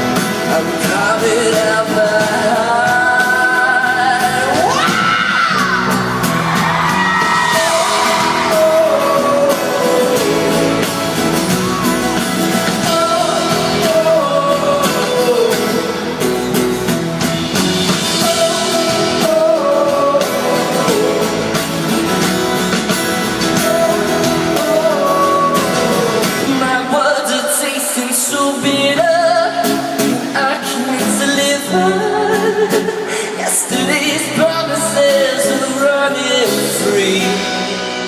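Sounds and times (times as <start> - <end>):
pop-rock band playing: 0.0 - 38.0
high sliding melodic line: 5.8 - 27.0.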